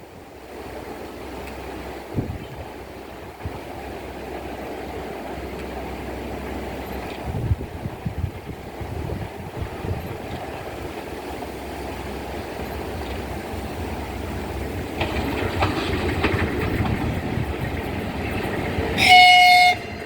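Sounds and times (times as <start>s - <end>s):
train wheels rumbling on rail: 0.0s - 20.0s
locomotive horn blast: 19.0s - 20.0s.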